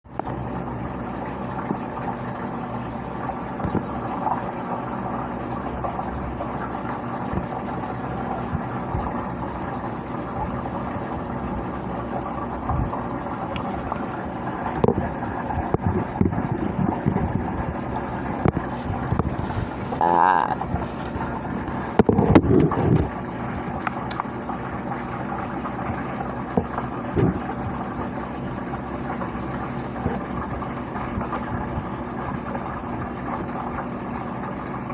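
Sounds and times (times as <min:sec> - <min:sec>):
steady mechanical hum: 0:00.0 - 0:34.9
short high vocal sound: 0:19.9 - 0:20.7
person burping loudly: 0:20.0 - 0:20.6.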